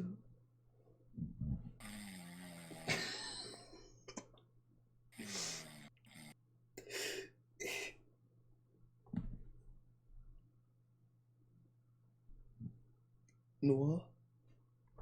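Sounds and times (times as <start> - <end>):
person breathing throatily: 1.2 - 3.6, 5.2 - 8.0.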